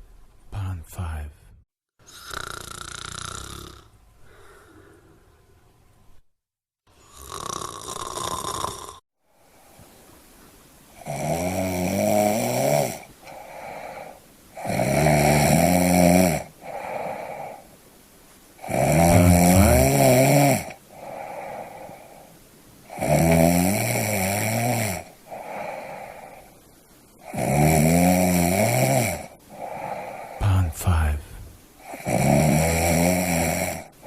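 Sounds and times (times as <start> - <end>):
person snoring: 2.0 - 5.4, 6.9 - 9.0, 11.0 - 17.7, 18.6 - 22.3, 22.9 - 26.6, 27.2 - 34.0.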